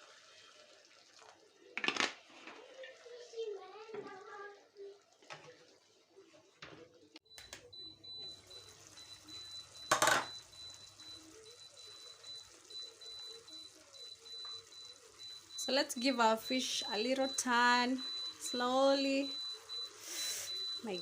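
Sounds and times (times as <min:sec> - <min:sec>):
sauce bubbling in a pan: 0:00.0 - 0:06.0, 0:07.8 - 0:21.0.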